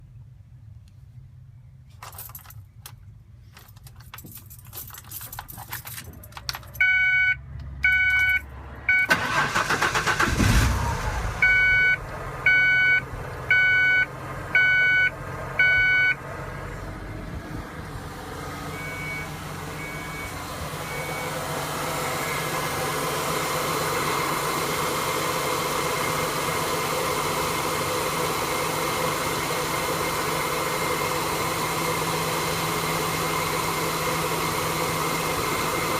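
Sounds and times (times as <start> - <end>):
short electronic beeps: 6.8 - 9.2, 11.4 - 16.2, 18.7 - 21.3
engine cranking: 9.1 - 11.2.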